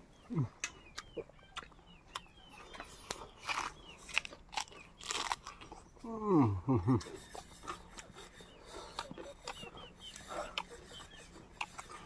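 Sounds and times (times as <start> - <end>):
chewing and slurping: 0.5 - 6.0, 7.0 - 12.0
chickens clucking: 6.8 - 12.0.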